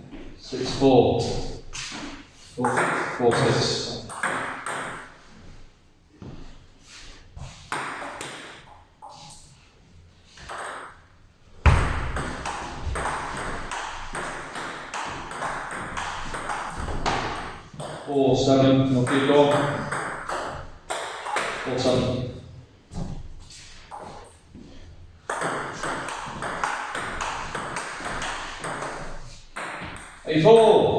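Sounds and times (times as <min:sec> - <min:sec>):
ball bouncing on table: 0:02.6 - 0:05.1, 0:11.6 - 0:18.1, 0:19.1 - 0:21.7, 0:25.3 - 0:30.2
table tennis ball hitting bats: 0:02.6 - 0:05.2, 0:07.7 - 0:09.2, 0:10.4 - 0:11.0, 0:11.6 - 0:18.1, 0:18.9 - 0:22.1, 0:25.2 - 0:30.9.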